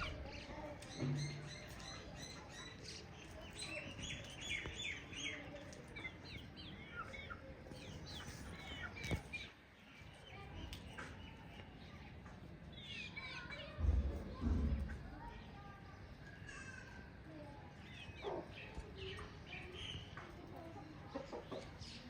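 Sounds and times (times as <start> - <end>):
chickens chirping: 0.0 - 12.1, 17.7 - 22.0.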